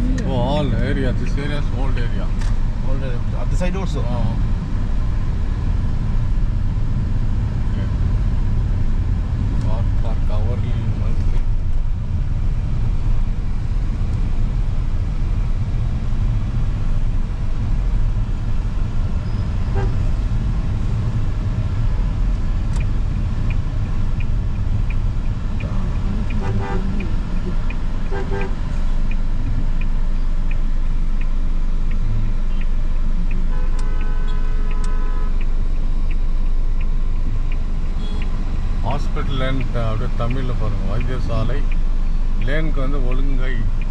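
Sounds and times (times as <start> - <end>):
car engine and road rumble: 0.0 - 43.9
turn signal ticking: 0.0 - 43.9
car horn: 19.2 - 20.2, 26.2 - 27.2, 28.1 - 28.9, 33.1 - 35.4, 38.0 - 38.3.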